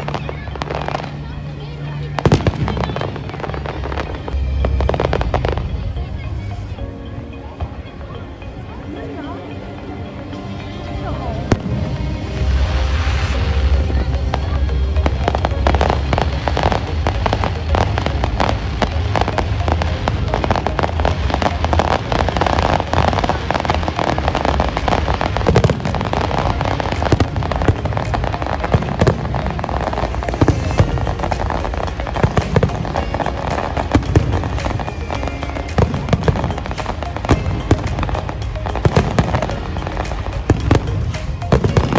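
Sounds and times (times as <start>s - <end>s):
music: 0.0s - 41.9s
fireworks crackling: 11.5s - 41.9s.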